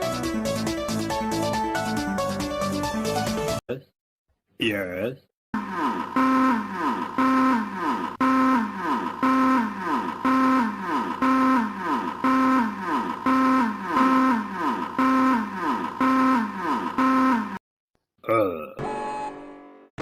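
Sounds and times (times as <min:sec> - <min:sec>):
electronic siren: 0:05.6 - 0:17.6.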